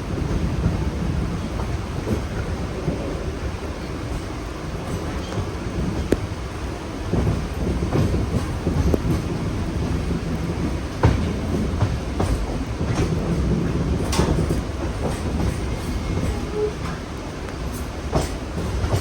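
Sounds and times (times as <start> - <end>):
train wheels rumbling on rail: 0.0 - 19.0
wheels clunking over track joints: 7.1 - 17.0.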